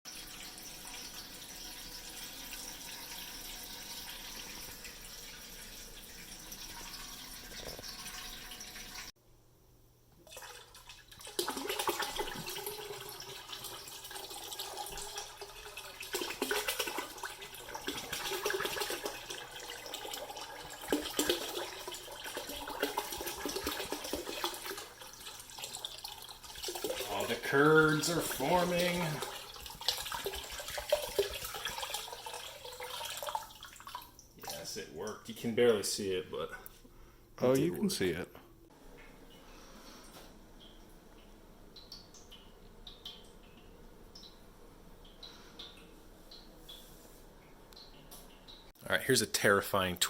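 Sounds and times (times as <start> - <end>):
liquid pouring into container: 0.1 - 9.1, 10.2 - 34.7.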